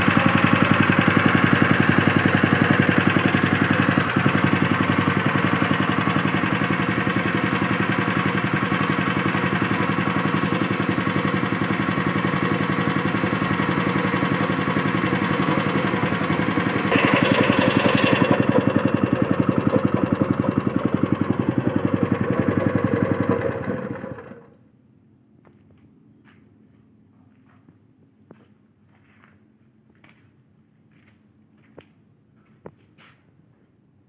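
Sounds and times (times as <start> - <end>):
engine running: 0.0 - 24.5.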